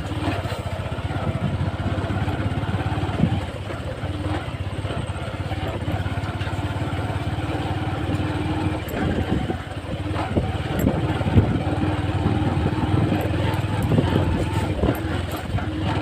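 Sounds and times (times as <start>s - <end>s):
motorcycle engine running: 0.0s - 16.0s
knocks and rattles: 5.6s - 16.0s.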